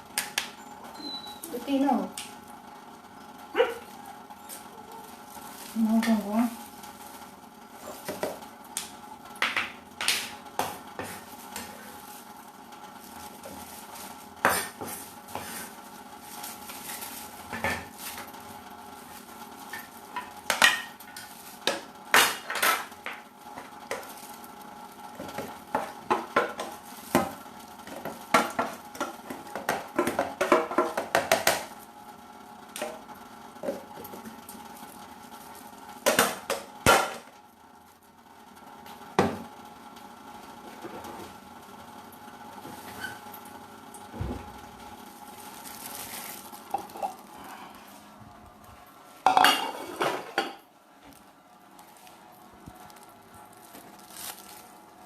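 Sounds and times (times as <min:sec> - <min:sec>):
dishes and utensils clinking: 0:49.3 - 0:50.6.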